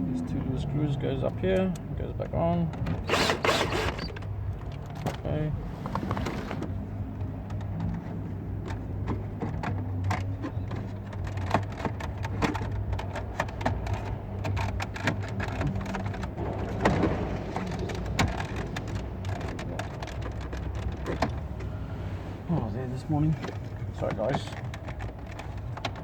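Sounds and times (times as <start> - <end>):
plastic trim clicks and rattles: 8.6 - 21.7, 23.4 - 26.0.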